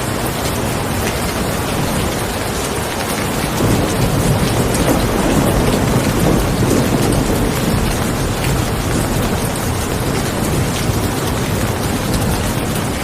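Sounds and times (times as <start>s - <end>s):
steady rain falling: 0.0s - 13.0s
low rumble of thunder: 3.2s - 13.0s.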